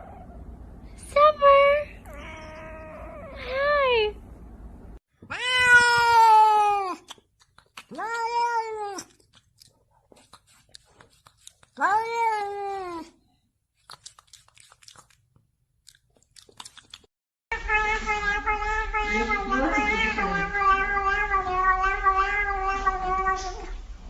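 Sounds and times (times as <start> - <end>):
cat meowing: 5.2 - 7.0, 17.5 - 23.7.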